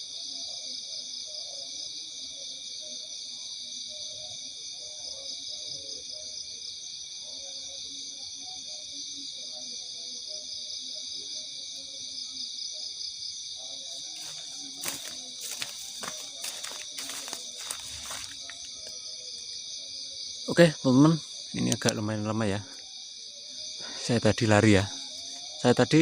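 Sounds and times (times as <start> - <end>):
shrill insect chorus: 0.0 - 26.0
footsteps: 13.9 - 19.0.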